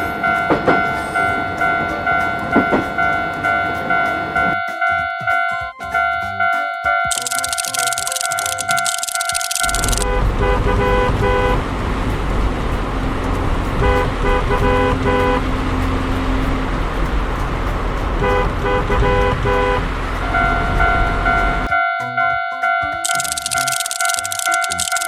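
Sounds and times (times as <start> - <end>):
train rumble: 10.0 - 21.7
train horn toots: 13.8 - 15.6.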